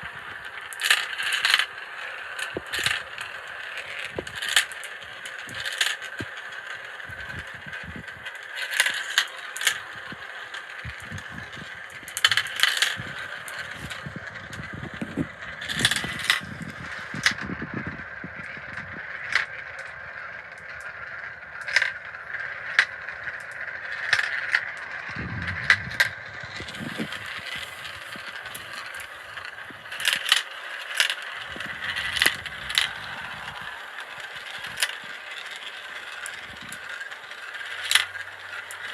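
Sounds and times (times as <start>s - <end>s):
marbles clicking on track: 0.0s - 38.9s
marbles rolling whir: 0.0s - 38.9s
low rumbles: 23.1s - 30.0s, 31.4s - 35.2s.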